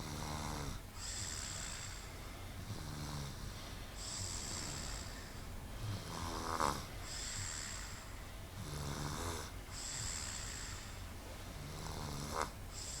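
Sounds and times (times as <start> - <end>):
rattling snores: 0.0 - 13.0.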